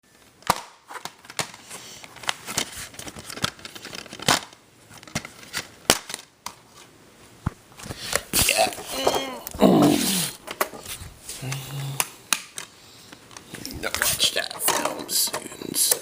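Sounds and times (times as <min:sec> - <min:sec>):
packaging crinkling and rustling: 0:00.4 - 0:06.9.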